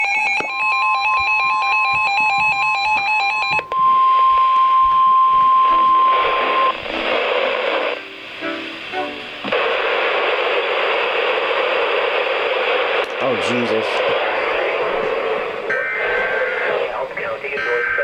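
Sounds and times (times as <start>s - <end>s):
steady high alarm tone: 0.0s - 6.8s, 15.6s - 16.7s
radio static hiss: 3.7s - 18.0s.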